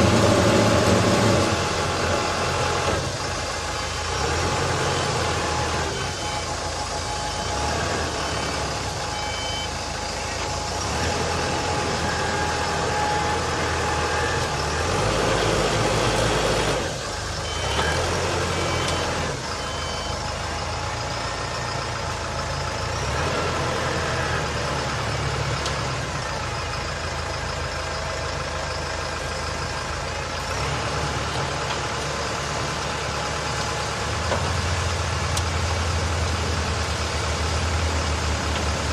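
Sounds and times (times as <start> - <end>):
concrete mixer engine running: 0.0 - 38.9
warning alarm beeps: 4.9 - 14.8, 17.4 - 21.5.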